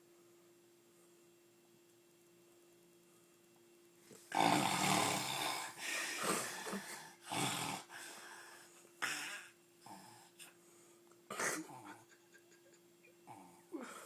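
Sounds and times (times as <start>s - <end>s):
loud snoring: 4.3s - 6.5s, 7.2s - 7.9s.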